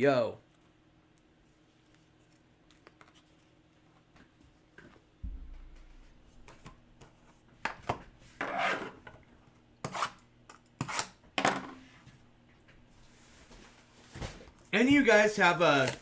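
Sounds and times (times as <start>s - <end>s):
thump on a table: 5.2s - 6.7s
cardboard and wrapper scraping: 14.8s - 16.0s.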